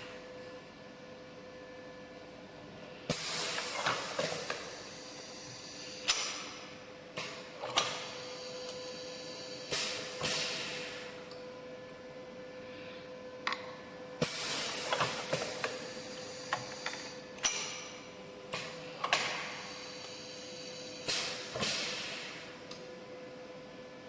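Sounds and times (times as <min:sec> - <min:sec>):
steady machine hum: 0:00.0 - 0:24.0
machine clicks and clacks: 0:03.1 - 0:04.7, 0:07.2 - 0:08.2, 0:14.2 - 0:15.8, 0:16.5 - 0:18.0, 0:18.6 - 0:20.2
hiss of released air: 0:03.1 - 0:06.5, 0:08.0 - 0:11.2, 0:14.2 - 0:16.9, 0:19.4 - 0:22.5.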